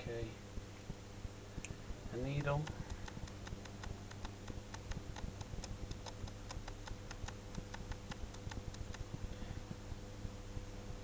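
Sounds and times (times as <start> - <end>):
rapid regular ticking: 1.3 - 9.8
potter's wheel motor hum: 1.8 - 11.0.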